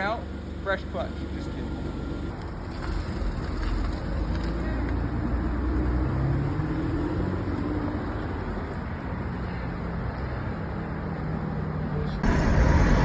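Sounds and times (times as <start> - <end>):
car engine running: 0.0 - 2.4.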